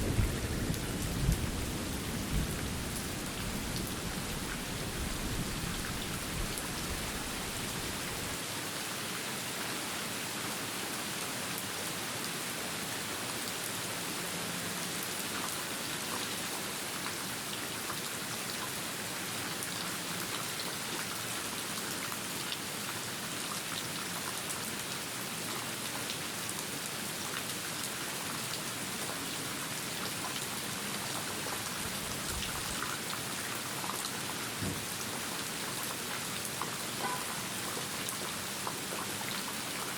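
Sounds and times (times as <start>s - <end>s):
low thunder rumble: 0.0s - 3.8s
steady rain falling: 0.0s - 39.9s.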